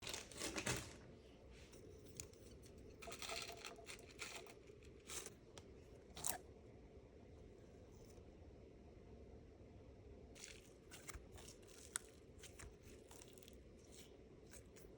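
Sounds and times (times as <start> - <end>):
slime being squished by hand: 10.4 - 14.9.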